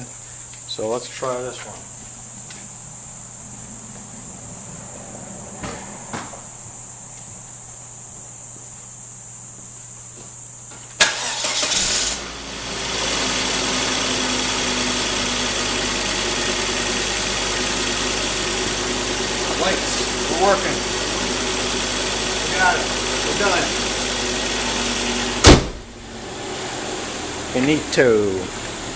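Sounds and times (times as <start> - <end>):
crickets chirping: 0.0 - 12.8, 15.9 - 26.0
car engine starting and idling: 11.0 - 28.9.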